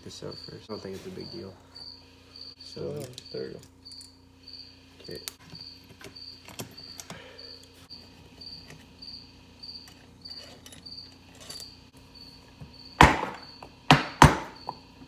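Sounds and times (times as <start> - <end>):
cricket chirping: 0.0 - 15.0
loud sharp ringing knock: 13.0 - 14.8.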